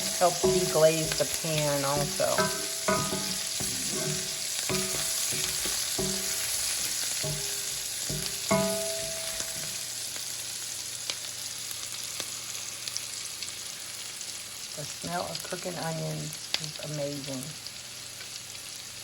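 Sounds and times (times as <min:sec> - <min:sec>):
utensil clanking against pan: 0:00.0 - 0:09.8
onion sizzling in a skillet: 0:00.0 - 0:19.0.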